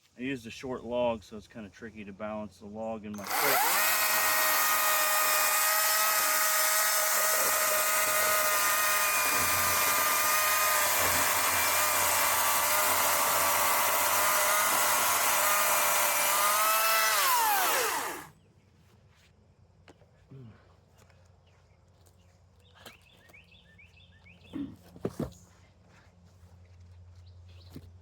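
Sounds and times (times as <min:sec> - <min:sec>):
electric chainsaw motor whine: 0:03.2 - 0:18.3.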